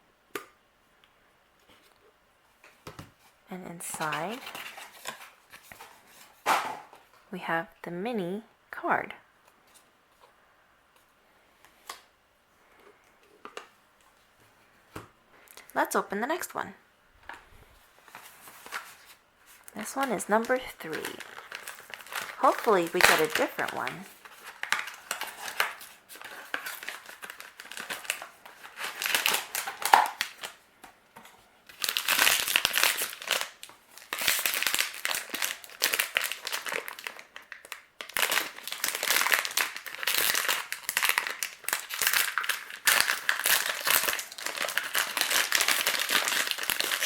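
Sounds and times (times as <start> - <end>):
packaging crinkling and tearing: 3.9 - 6.3, 18.0 - 30.6, 31.6 - 47.0.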